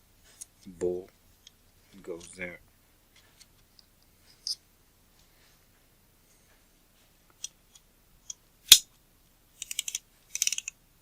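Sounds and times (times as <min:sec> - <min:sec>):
small metal parts clicking: 0:09.6 - 0:10.8.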